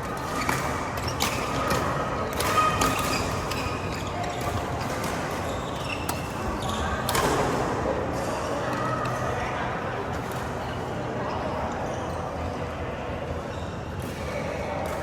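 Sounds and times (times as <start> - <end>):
shoes squeaking on court: 0.1 - 7.4.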